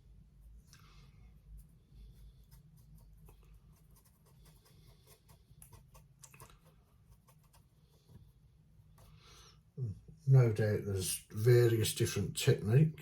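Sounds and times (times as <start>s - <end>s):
paintbrush scratching and ticking: 1.4s - 9.3s.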